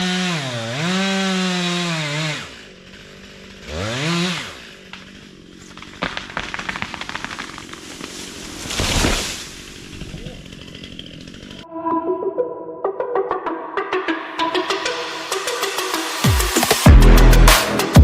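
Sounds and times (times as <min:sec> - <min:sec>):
chainsaw revving: 0:00.0 - 0:11.6
sharp crackling snaps: 0:05.6 - 0:10.4.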